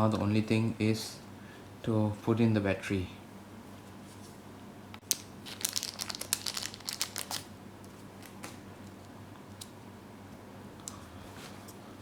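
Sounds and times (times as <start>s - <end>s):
plastic wrapping crinkling: 5.0s - 7.5s.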